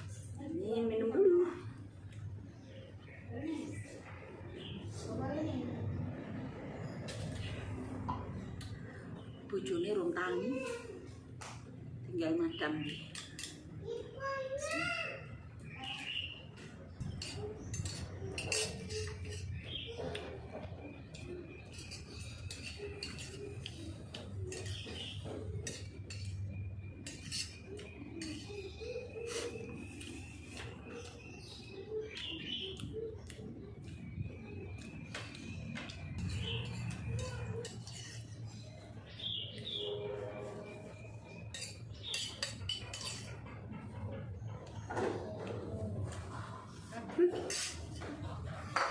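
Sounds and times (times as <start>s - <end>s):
cutlery clinking on a plate: 17.0s - 19.6s, 21.6s - 28.6s, 35.2s - 38.4s, 41.3s - 43.4s, 47.4s - 48.1s.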